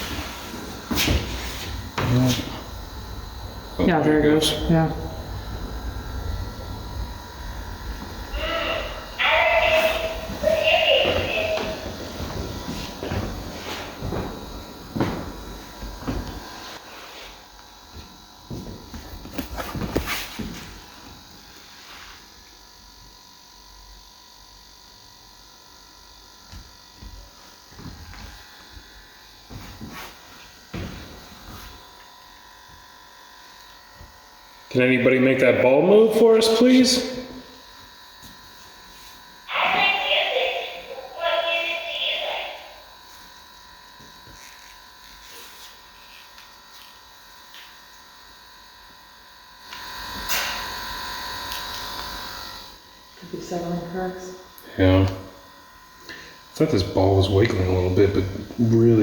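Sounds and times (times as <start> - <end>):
high electronic whine: 0.0 - 16.8
electrical buzz with high whine: 0.0 - 59.0.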